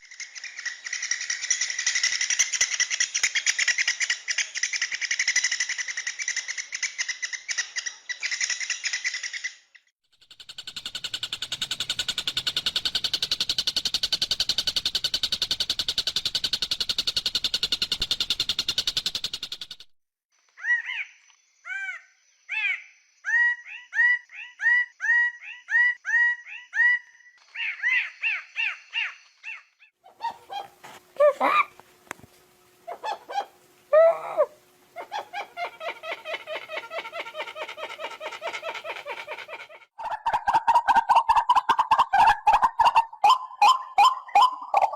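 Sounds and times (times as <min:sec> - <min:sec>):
bird varied choppy song: 0:10.6 - 0:19.9, 0:32.5 - 0:44.9
bird buzzing trill: 0:30.2 - 0:39.8.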